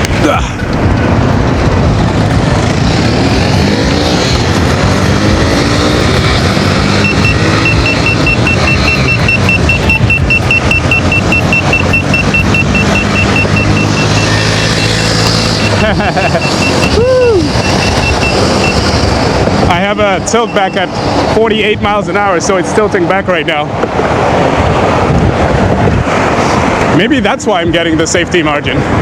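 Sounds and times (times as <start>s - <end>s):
low hum: 0.0s - 19.7s
wind rushing over microphone: 0.0s - 29.0s
rapid high beeps: 6.8s - 18.9s, 20.3s - 20.9s.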